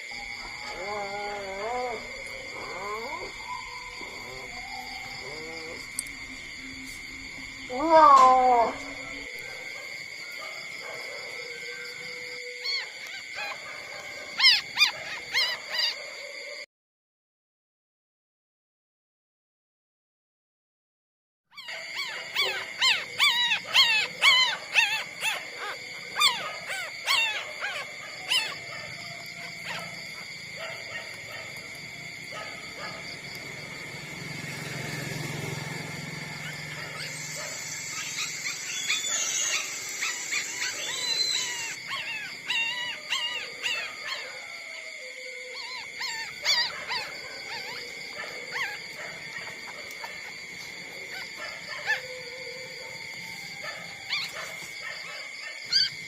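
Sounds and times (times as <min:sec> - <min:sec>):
puppies whimpering and squeaking: 0:00.0 - 0:09.6, 0:12.1 - 0:16.1, 0:21.6 - 0:31.6, 0:36.3 - 0:44.4, 0:45.5 - 0:55.0, 0:55.6 - 0:56.0.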